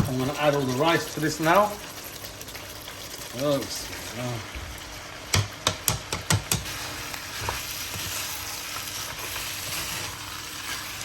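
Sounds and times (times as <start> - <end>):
rice sizzling in pot: 0.0 - 11.0
sharp knocks against pan: 5.3 - 6.7.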